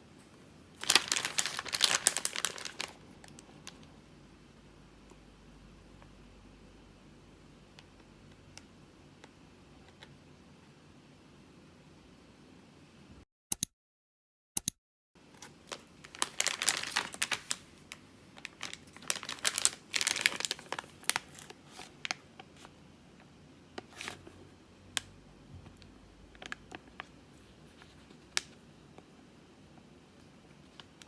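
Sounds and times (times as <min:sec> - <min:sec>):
wrapper crinkling and tearing: 0:00.8 - 0:03.8, 0:15.4 - 0:22.3.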